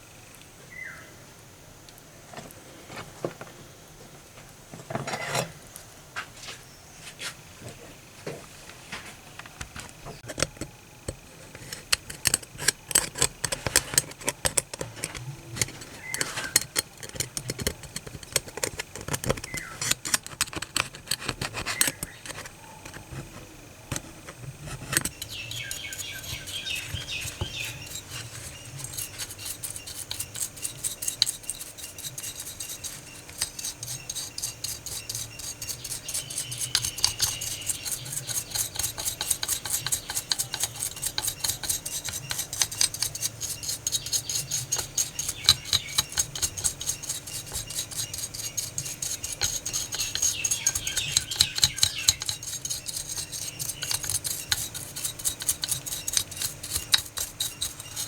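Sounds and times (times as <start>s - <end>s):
metal parts clicking and scraping: 10.2s - 23.2s, 23.9s - 58.0s
steady hum: 14.7s - 58.0s.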